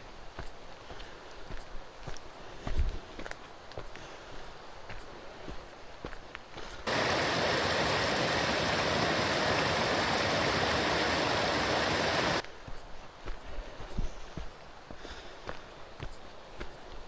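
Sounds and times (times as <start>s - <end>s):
faint footsteps on trail: 0.0s - 17.0s
stream water rushing: 6.9s - 12.4s.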